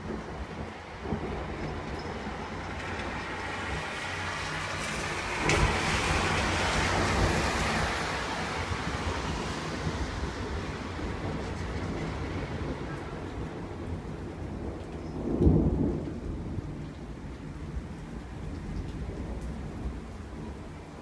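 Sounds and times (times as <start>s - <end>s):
thunder rumbling: 0.0s - 21.0s
sharp thunder crack: 4.9s - 8.0s, 15.2s - 16.7s.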